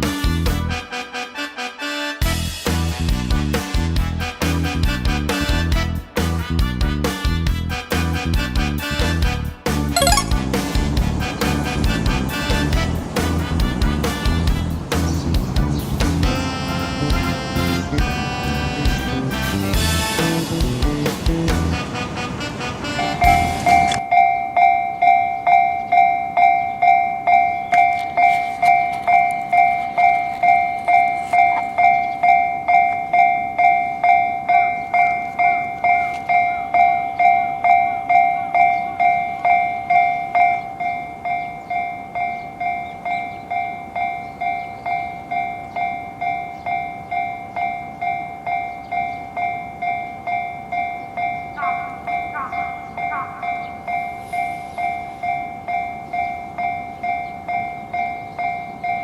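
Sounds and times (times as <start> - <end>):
level crossing warning bell: 23.2 - 59.0
train passing: 47.8 - 59.0.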